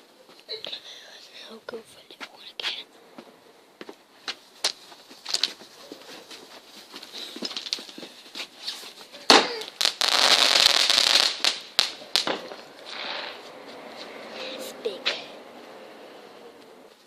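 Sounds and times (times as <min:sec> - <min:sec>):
firework pops and crackles: 0:04.2 - 0:13.6
hissing crackle: 0:04.3 - 0:17.0
firework bang: 0:09.2 - 0:13.4.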